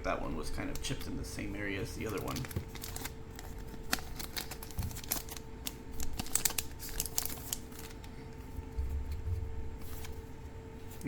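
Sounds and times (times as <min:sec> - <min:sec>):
cards rustling: 0:00.6 - 0:08.5, 0:09.8 - 0:11.0
cards clicking and snapping: 0:02.0 - 0:08.1.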